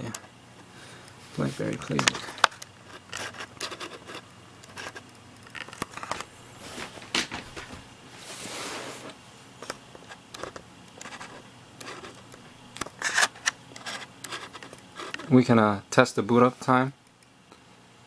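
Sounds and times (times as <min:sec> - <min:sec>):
packaging rustle: 0:04.8 - 0:09.0.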